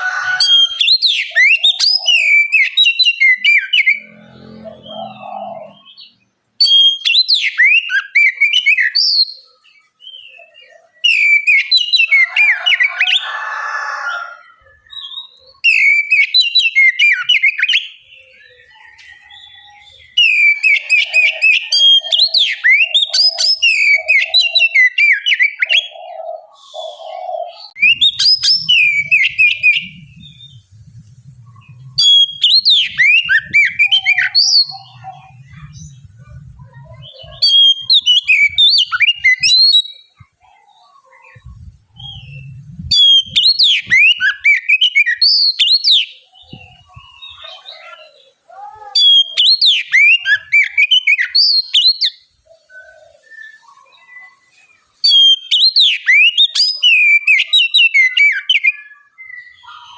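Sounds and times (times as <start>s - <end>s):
bird singing varied whistles: 6.6s - 9.4s, 14.9s - 17.9s, 27.7s - 30.6s, 31.9s - 35.0s, 37.4s - 40.1s, 42.0s - 46.2s, 49.0s - 52.2s, 55.0s - 59.9s.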